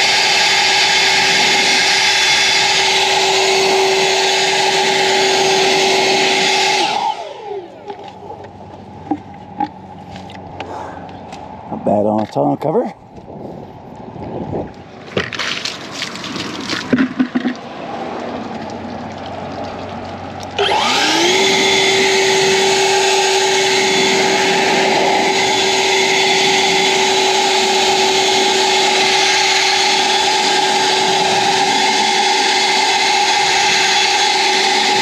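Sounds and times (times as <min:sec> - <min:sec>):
leaf blower whine and air rush: 0:00.0 - 0:09.2, 0:20.6 - 0:35.0.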